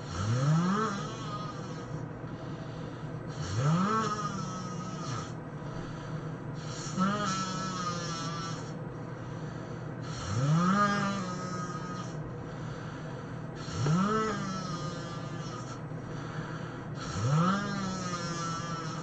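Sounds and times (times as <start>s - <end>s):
person snoring loudly: 0.0s - 2.0s, 3.3s - 6.0s, 6.6s - 8.8s, 10.0s - 12.2s, 13.6s - 19.0s
steady background hum: 0.0s - 19.0s.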